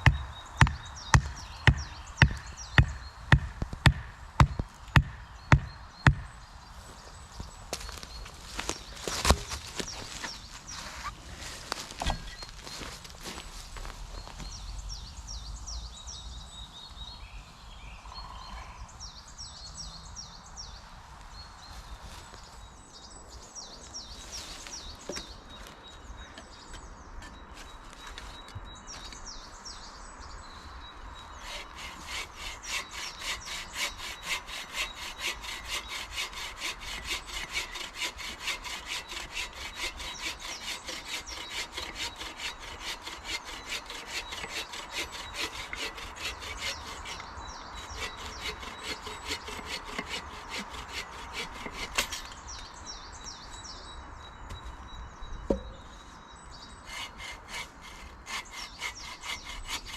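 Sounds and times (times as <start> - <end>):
birds chirping: 0.0 - 59.9
hand saw cutting wood: 31.4 - 52.4, 56.8 - 59.9.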